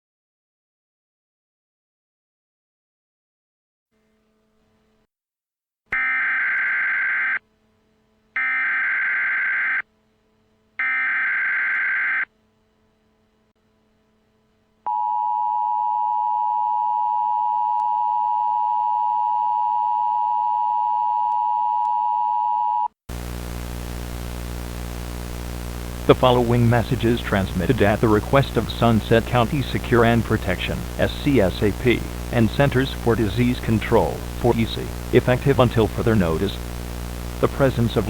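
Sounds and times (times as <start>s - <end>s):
digital data header bursts: 23.1s - 38.0s.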